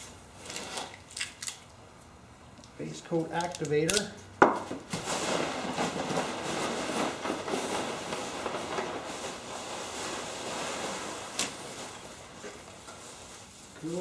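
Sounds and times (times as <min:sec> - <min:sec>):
packing peanuts rustling: 0:04.8 - 0:14.0.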